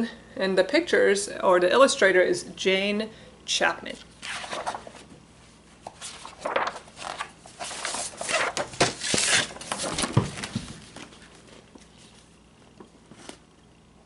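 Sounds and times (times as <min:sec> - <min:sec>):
book pages rustling: 0:04.2 - 0:05.1, 0:05.8 - 0:13.4.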